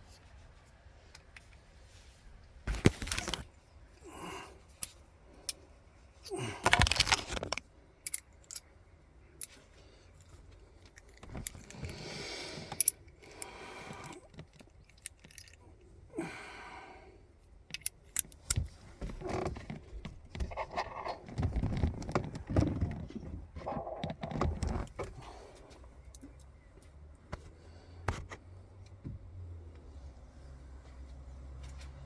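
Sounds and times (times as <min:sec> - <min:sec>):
small metal parts clinking: 0:06.2 - 0:15.6, 0:17.7 - 0:18.7.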